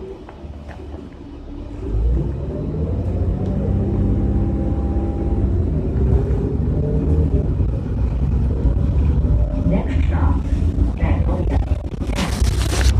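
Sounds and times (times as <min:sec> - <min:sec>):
bus engine rumble: 0:00.0 - 0:12.9
drivetrain whine: 0:00.0 - 0:12.9.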